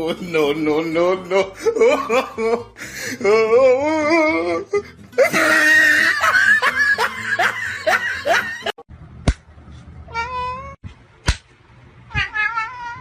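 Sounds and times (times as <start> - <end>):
cat meow: 10.1 - 10.8, 12.1 - 13.0.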